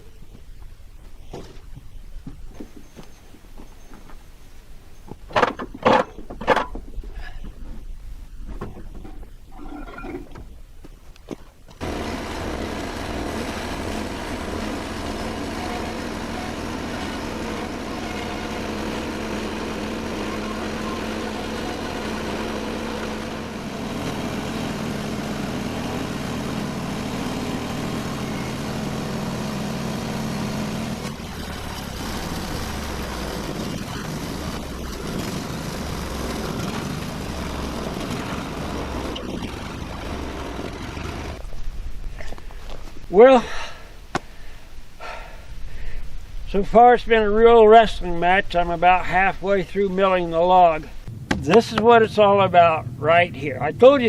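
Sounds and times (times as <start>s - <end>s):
sawmill engine running: 11.8s - 41.6s, 46.6s - 54.0s.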